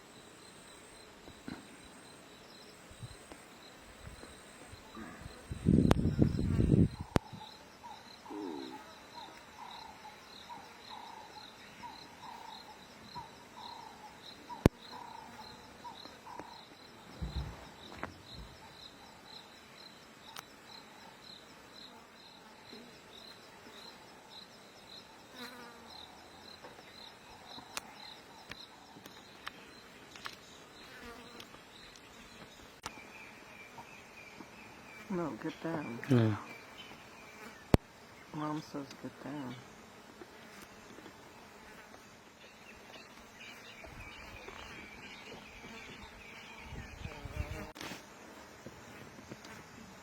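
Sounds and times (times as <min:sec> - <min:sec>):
insects chirping: 0:00.0 - 0:50.0
low thump: 0:17.2 - 0:17.7.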